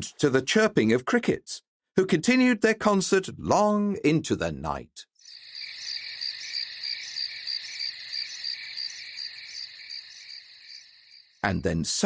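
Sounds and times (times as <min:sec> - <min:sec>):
crickets chirping: 0:05.2 - 0:11.7.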